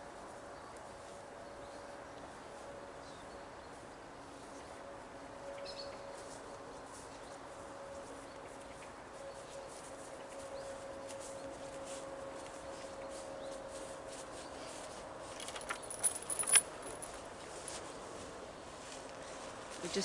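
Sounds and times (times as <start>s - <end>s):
soft rustling: 6.1s - 20.0s.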